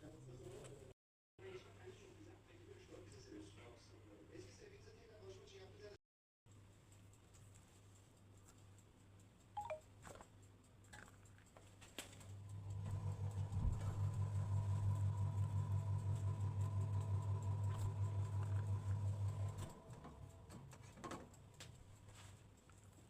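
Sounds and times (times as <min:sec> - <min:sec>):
microwave oven humming: 0:12.3 - 0:21.4.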